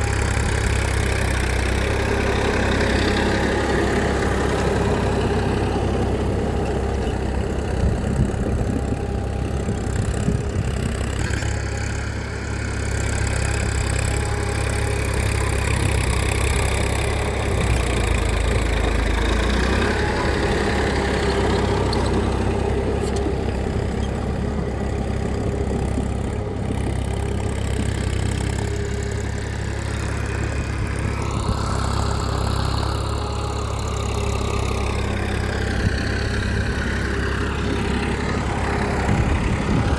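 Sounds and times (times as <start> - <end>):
small engine humming: 0.0 - 39.9.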